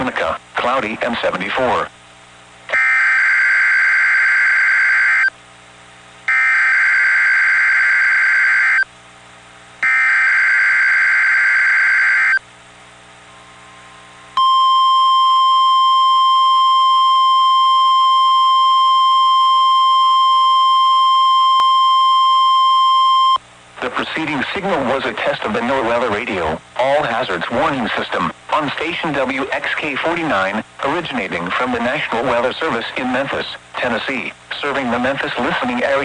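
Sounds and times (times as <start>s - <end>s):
low receiver hum: 0.0s - 36.0s
harsh buzzing data bursts: 2.7s - 5.3s, 6.3s - 8.9s, 9.8s - 12.5s
steady warning alarm tone: 2.7s - 5.3s, 6.3s - 8.9s, 9.8s - 12.4s, 14.4s - 23.4s.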